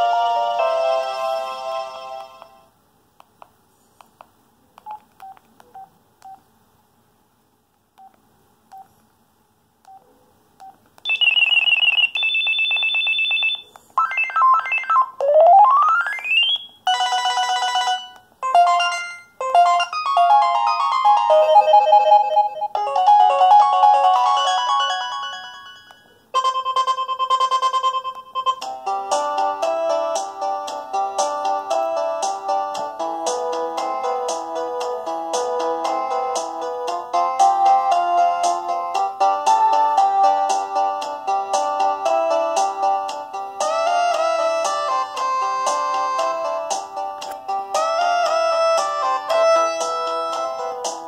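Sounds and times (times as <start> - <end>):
short electronic ringtone melodies: 11.1 - 28.7.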